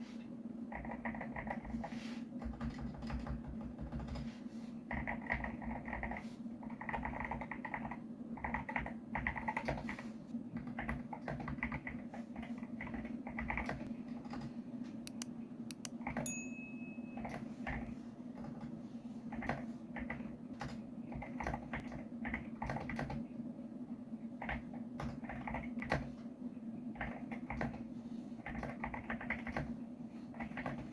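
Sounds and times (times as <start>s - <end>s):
mechanical keyboard key clicks: 15.1s - 16.2s
brief high tone: 16.3s - 17.3s.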